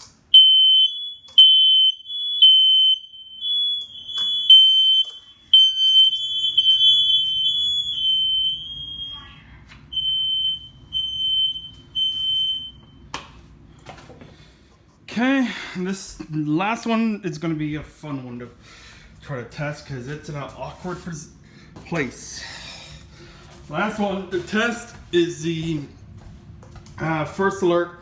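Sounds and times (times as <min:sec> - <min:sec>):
smoke alarm beeping: 0:00.0 - 0:13.1
second alarm tone: 0:00.3 - 0:13.1.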